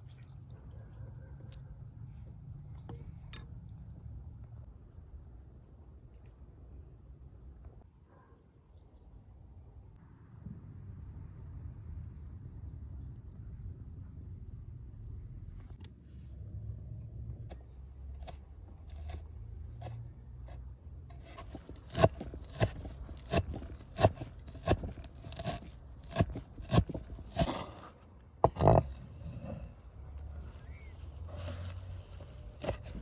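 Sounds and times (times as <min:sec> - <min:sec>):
rustling and scraping: 0:17.4 - 0:33.0.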